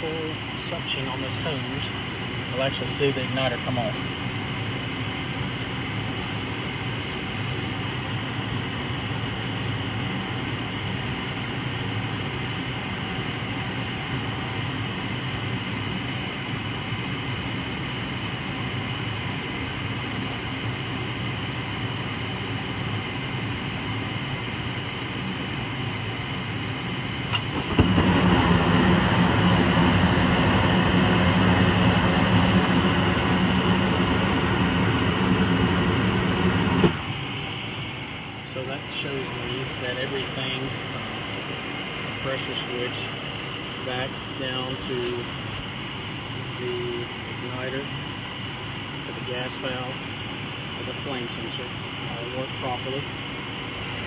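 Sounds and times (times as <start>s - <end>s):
furnace draft motor running: 27.2s - 37.4s
gas flame rush: 27.3s - 37.2s
click: 33.9s - 37.0s.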